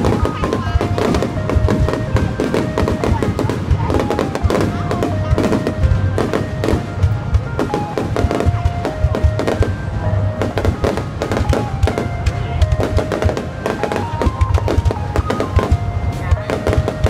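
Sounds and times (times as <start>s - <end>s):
fireworks bursting and crackling: 0.0s - 17.0s
music with held melody: 0.0s - 17.0s.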